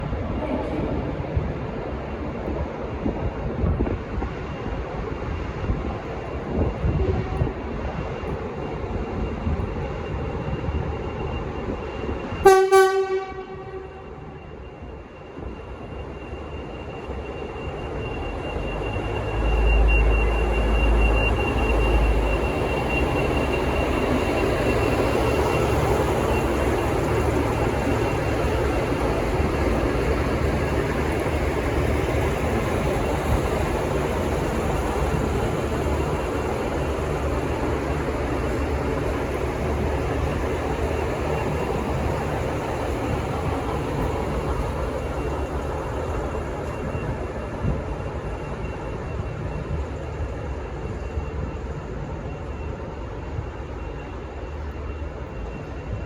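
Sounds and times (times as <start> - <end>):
diesel train engines rumbling: 0.0 - 56.0
train horn blast: 12.4 - 14.3.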